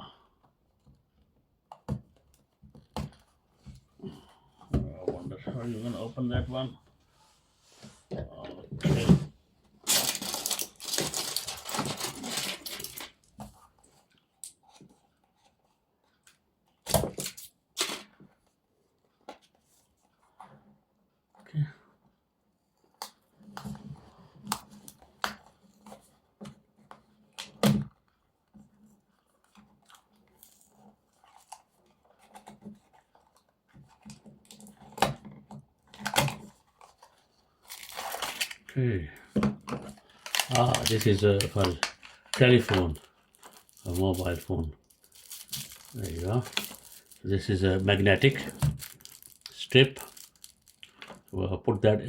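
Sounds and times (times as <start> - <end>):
packaging tearing and rustling: 9.8 - 13.4, 36.0 - 38.7, 39.9 - 51.3.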